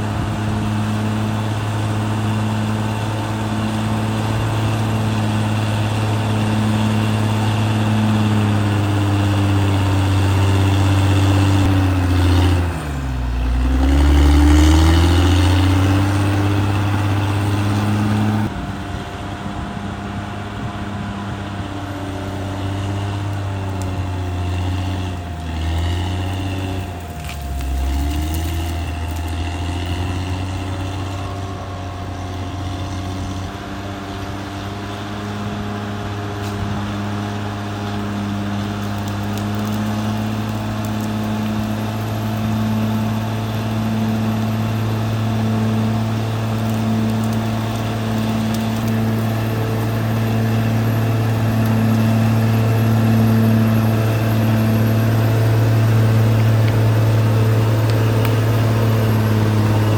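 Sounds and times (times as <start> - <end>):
bulldozer diesel engine running: 0.0 - 59.9.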